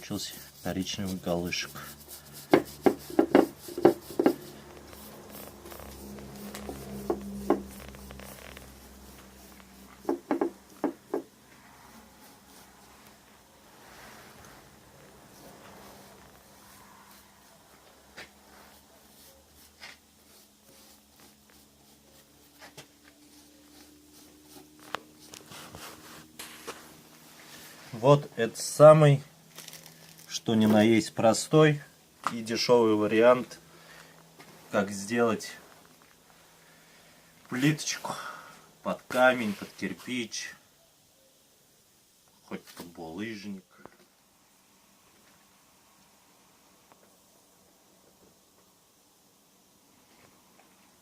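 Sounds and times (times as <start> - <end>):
faint handling scraping: 0.0 - 31.5, 39.0 - 40.2
low steady hum: 0.0 - 40.0
hard objects knocking: 2.5 - 4.4, 6.6 - 7.7, 10.0 - 11.3.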